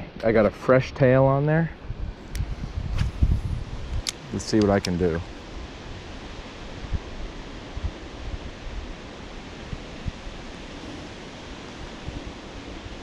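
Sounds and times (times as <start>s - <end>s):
low thumps on microphone: 2.5s - 3.9s.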